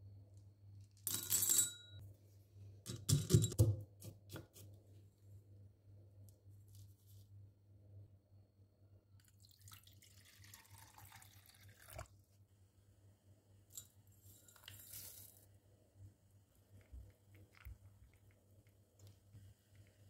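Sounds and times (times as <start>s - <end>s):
low electrical hum: 0.0s - 20.0s
water being poured: 9.3s - 12.1s.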